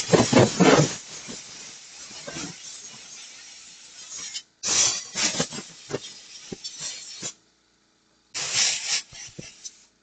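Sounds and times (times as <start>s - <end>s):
brush scrubbing plastic: 0.0s - 7.3s.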